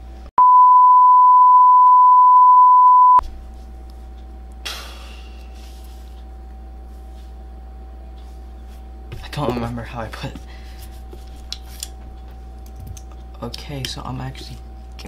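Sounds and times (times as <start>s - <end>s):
high-pitched censor beep: 0.4s - 3.2s.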